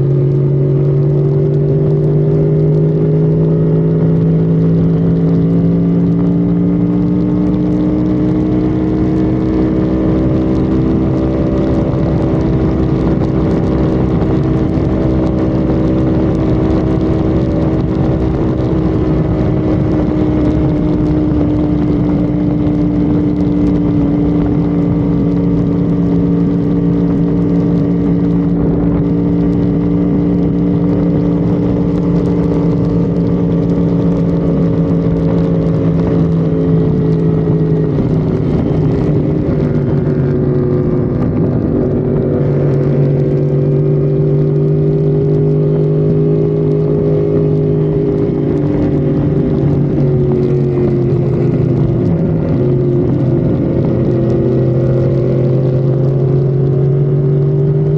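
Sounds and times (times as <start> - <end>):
car engine droning: 0.0 - 57.9
road and wind noise: 0.0 - 57.9.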